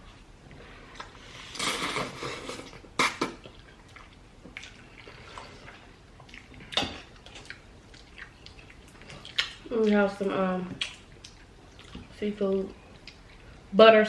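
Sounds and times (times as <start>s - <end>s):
wet mouth eating noises: 1.0s - 12.2s.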